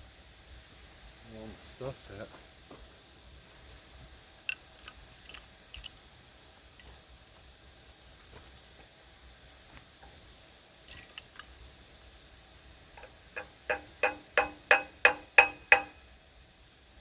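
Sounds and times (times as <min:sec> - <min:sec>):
hammer striking metal: 0:13.0 - 0:16.0.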